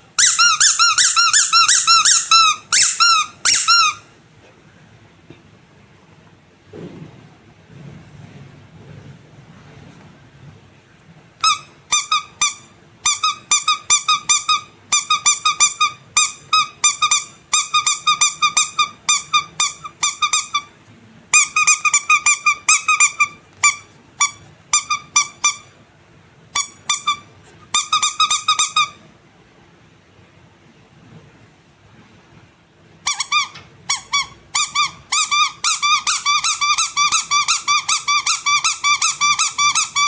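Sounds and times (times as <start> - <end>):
squeaky toy squeaking: 0.1 - 4.1, 11.4 - 20.7, 21.3 - 25.8, 26.5 - 29.0, 33.0 - 40.0.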